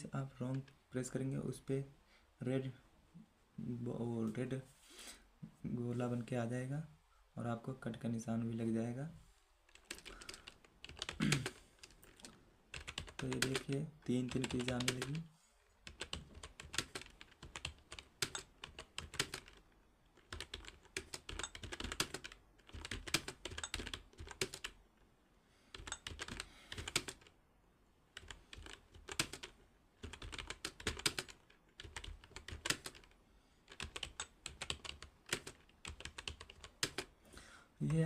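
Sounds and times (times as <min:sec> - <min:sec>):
keyboard typing: 0:09.7 - 0:24.8, 0:25.7 - 0:27.3, 0:28.1 - 0:37.2.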